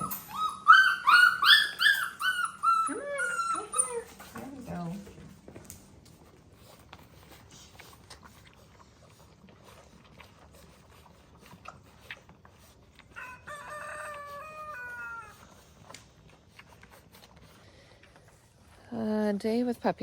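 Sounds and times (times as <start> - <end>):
rooster crowing: 13.2 - 15.4.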